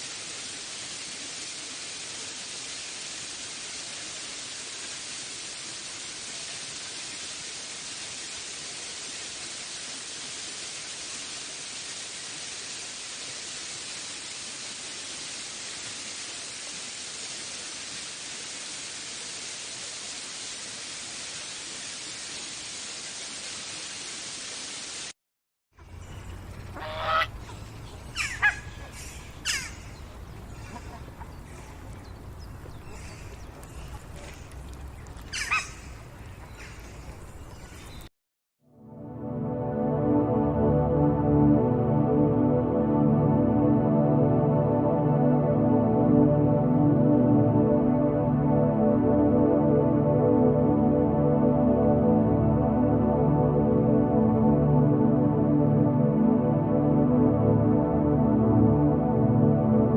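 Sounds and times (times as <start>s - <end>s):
steady hiss: 0.0s - 25.1s
harsh bird calls: 25.9s - 34.5s, 35.3s - 38.1s.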